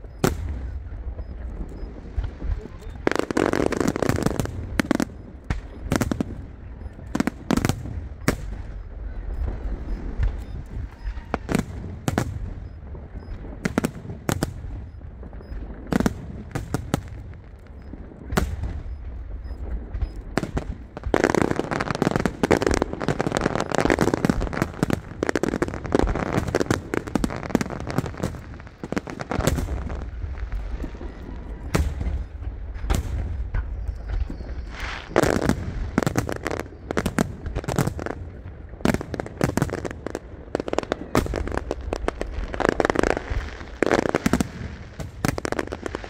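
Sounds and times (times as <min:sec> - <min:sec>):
low rumble: 0:00.0 - 0:03.1, 0:07.8 - 0:13.6, 0:17.4 - 0:21.1
fireworks bangs: 0:00.0 - 0:46.0
fireworks crackling and popping: 0:00.0 - 0:46.0.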